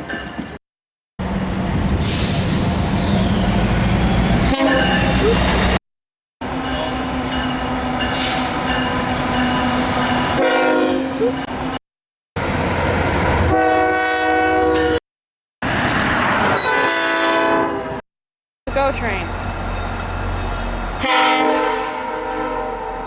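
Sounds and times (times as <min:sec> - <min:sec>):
rumble of passing trains: 0:01.2 - 0:05.8, 0:06.4 - 0:11.8, 0:12.4 - 0:15.0, 0:15.6 - 0:18.0, 0:18.7 - 0:23.0
train horns blowing chords: 0:04.4 - 0:05.0, 0:10.4 - 0:11.2, 0:13.5 - 0:15.0, 0:16.6 - 0:18.0, 0:21.0 - 0:23.0.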